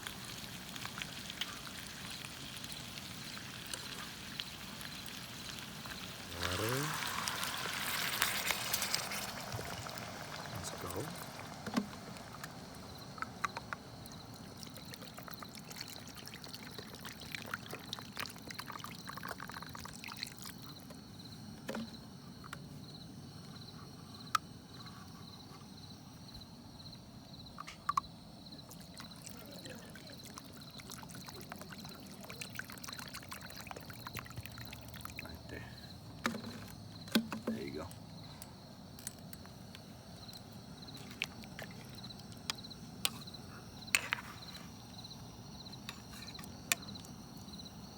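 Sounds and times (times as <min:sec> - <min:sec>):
crickets chirping: 0:00.0 - 0:47.9
cooking gear clicks and knocks: 0:36.2 - 0:39.8.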